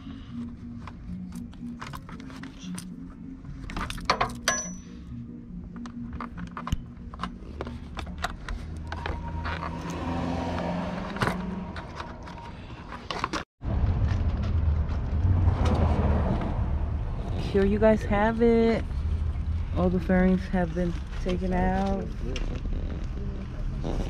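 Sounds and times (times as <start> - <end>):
steady low rumble: 13.6 - 23.8.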